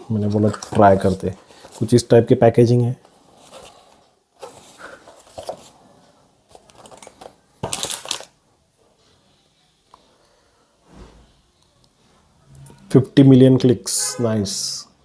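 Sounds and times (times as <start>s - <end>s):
cardboard box rustling: 3.4s - 5.8s.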